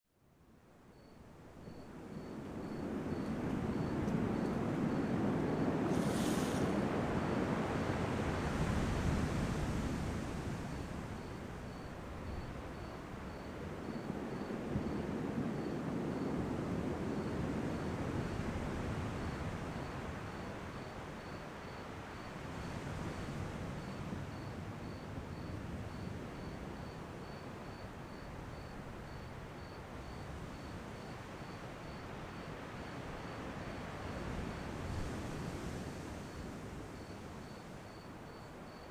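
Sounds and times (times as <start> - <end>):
faint insect chirping: 0.2 - 38.9
ocean waves on shore: 1.9 - 38.7
ocean waves rushing: 2.3 - 13.6.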